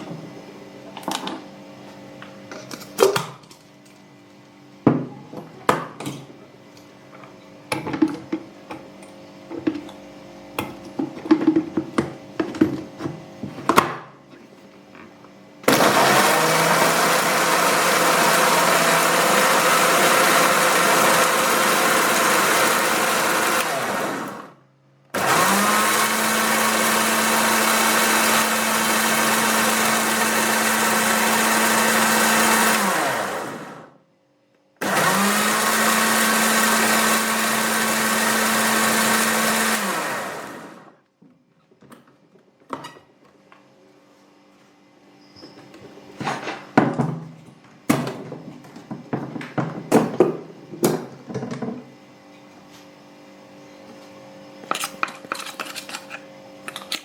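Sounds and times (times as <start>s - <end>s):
electric blender motor whine: 15.6s - 24.6s, 25.2s - 34.0s, 34.8s - 41.0s.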